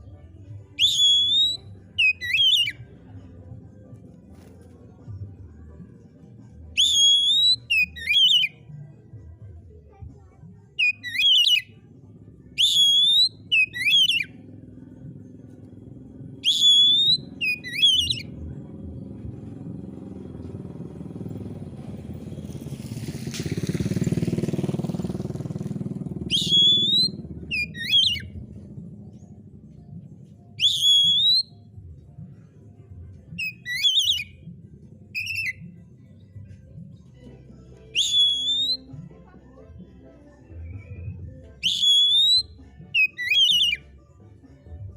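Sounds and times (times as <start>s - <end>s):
bird singing whistled phrases: 0.8s - 2.8s, 6.8s - 8.5s, 10.8s - 11.7s, 12.6s - 14.4s, 16.4s - 18.4s, 26.2s - 28.4s, 30.6s - 31.6s, 33.4s - 34.4s, 35.1s - 35.8s, 38.0s - 39.0s, 40.6s - 43.8s
low rumble: 18.0s - 30.6s.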